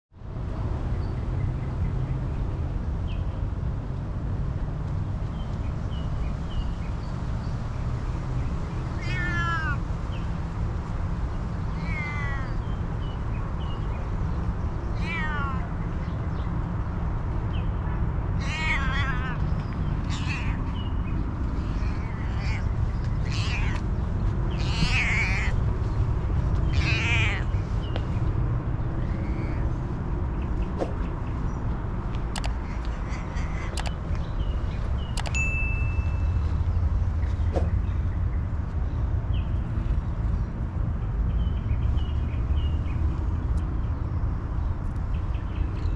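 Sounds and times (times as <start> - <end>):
low outdoor rumble: 0.2 - 45.9
cat meowing: 8.9 - 9.8, 11.7 - 12.6, 14.9 - 15.8, 18.4 - 20.8, 21.6 - 23.9, 24.5 - 25.6, 26.6 - 27.6
small birds chirping: 11.2 - 45.9.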